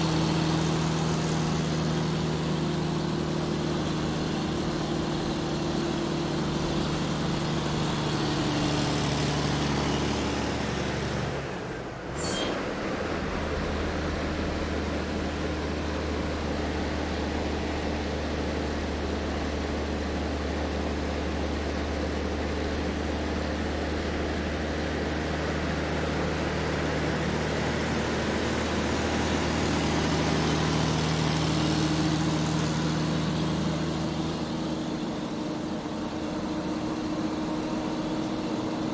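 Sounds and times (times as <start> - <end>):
truck engine running: 0.0 - 38.9
constant high whine: 11.7 - 31.6
short high tone: 12.1 - 14.4.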